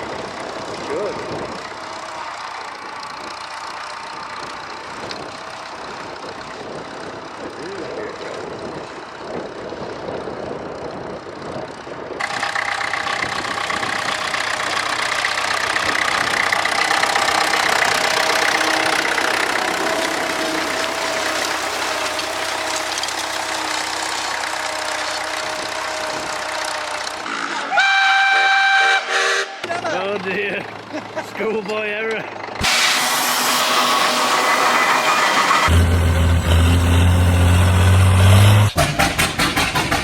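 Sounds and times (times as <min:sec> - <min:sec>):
tractor engine running: 0:00.0 - 0:28.0, 0:29.6 - 0:40.0.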